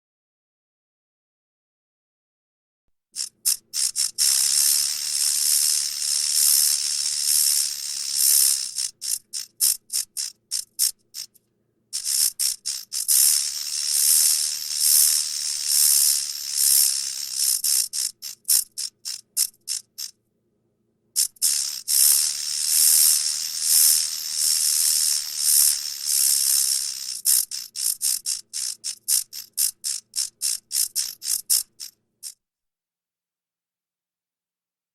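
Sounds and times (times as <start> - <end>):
dragonfly wings buzzing: 3.2 - 11.4, 12.0 - 20.2, 21.2 - 32.4.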